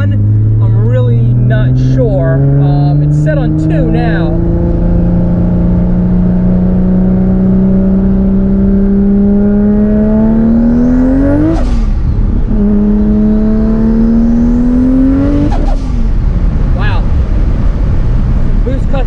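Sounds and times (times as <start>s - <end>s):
exhaust crackle: 0.0s - 19.0s
car engine under boost: 9.1s - 18.6s.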